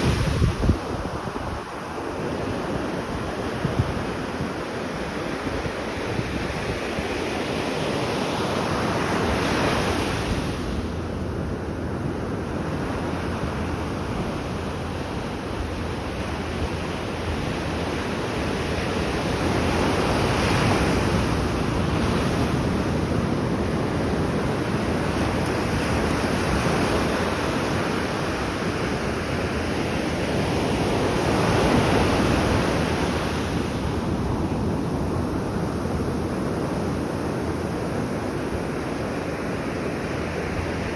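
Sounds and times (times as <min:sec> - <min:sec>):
wind on microphone: 0:00.0 - 0:40.9.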